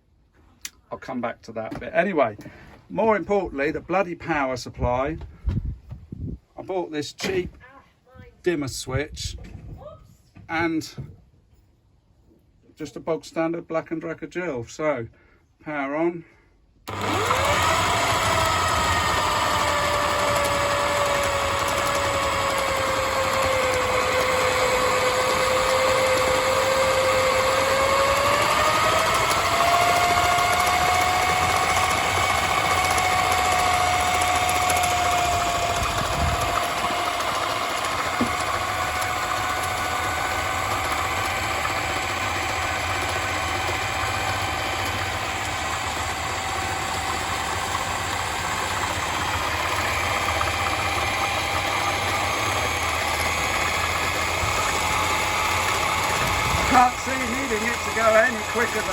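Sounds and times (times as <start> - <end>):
drill motor whining: 16.8 - 58.9.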